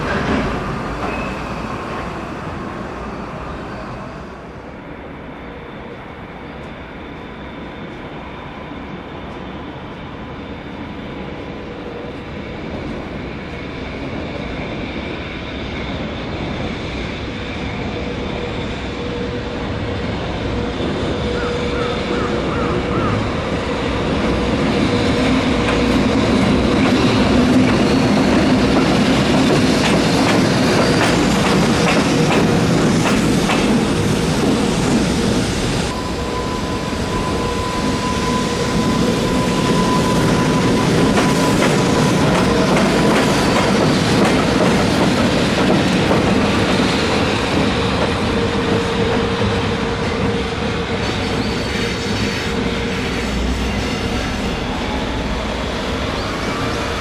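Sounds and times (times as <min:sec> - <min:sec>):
electric locomotive whine: 0:00.0 - 0:57.0.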